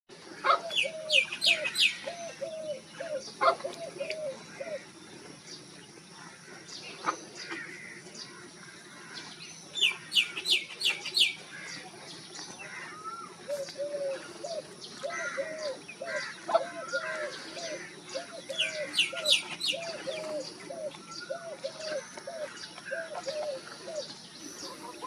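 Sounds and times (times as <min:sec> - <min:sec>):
dove cooing: 0:00.4 - 0:04.9, 0:12.7 - 0:25.0
small bird chirping: 0:00.7 - 0:04.8, 0:16.9 - 0:25.0.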